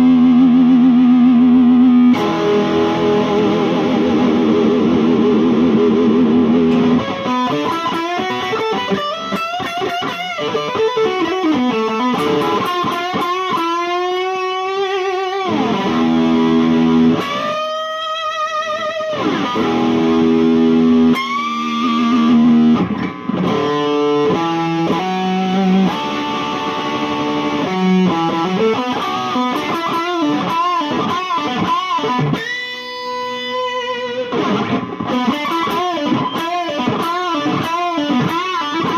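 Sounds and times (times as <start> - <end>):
electric guitar with vibrato: 0.0 - 38.9.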